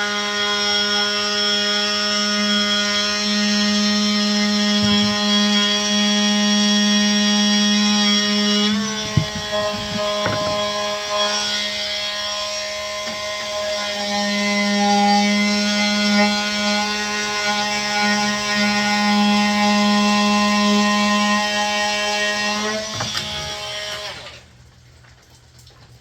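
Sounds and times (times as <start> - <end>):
blade knocks: 4.7 - 5.7, 8.5 - 11.6, 22.8 - 24.1.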